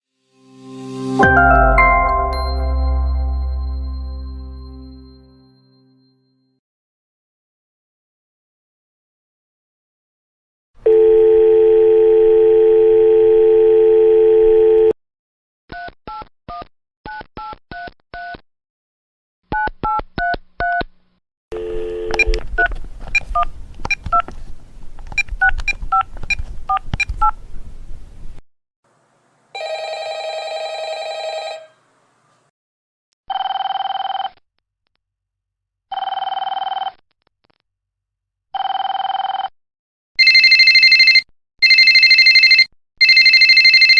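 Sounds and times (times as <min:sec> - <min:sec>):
telephone dial tone: 0:10.8 - 0:15.0, 0:21.5 - 0:24.2, 0:29.6 - 0:31.7, 0:33.3 - 0:34.4, 0:36.0 - 0:37.0, 0:38.6 - 0:39.5, 0:40.2 - 0:43.9
harsh telephone tone: 0:10.9 - 0:15.0, 0:21.5 - 0:22.4, 0:29.6 - 0:31.8, 0:33.3 - 0:34.4, 0:35.9 - 0:37.0, 0:38.6 - 0:39.5, 0:40.2 - 0:43.9
touch-tone keypad beeps: 0:21.6 - 0:24.3.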